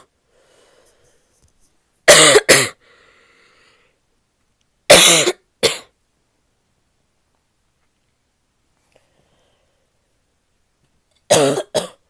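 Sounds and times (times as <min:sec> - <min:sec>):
woman coughing: 0:02.1 - 0:02.8, 0:04.9 - 0:05.9, 0:11.3 - 0:12.0.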